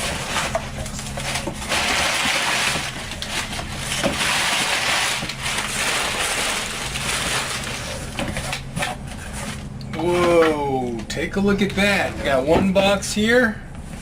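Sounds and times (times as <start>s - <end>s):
cardboard and packing rustling: 0.0s - 10.5s
low steady hum: 0.0s - 14.0s.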